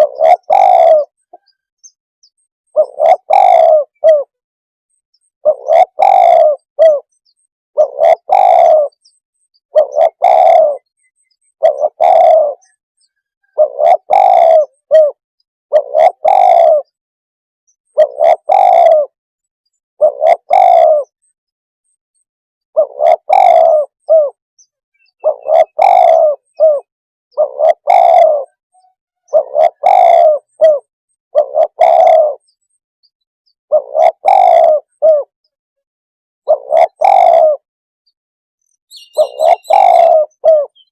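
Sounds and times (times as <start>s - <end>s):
dove cooing: 0.0s - 1.7s, 2.7s - 4.4s, 5.4s - 7.2s, 7.8s - 12.8s, 13.4s - 17.0s, 17.9s - 19.2s, 20.0s - 21.2s, 22.8s - 24.4s, 25.0s - 32.6s, 33.7s - 35.4s, 36.4s - 37.6s, 38.9s - 40.9s.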